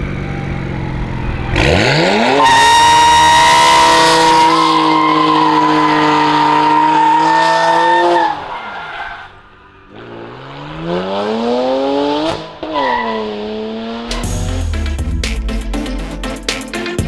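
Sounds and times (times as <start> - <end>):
car engine revving: 0.0 - 8.4, 9.3 - 16.7
music with heavy beat: 14.1 - 17.0.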